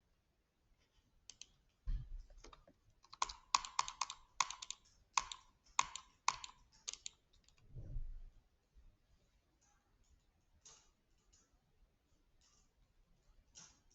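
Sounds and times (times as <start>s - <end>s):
sharp clicks: 1.3s - 1.6s, 2.4s - 7.6s.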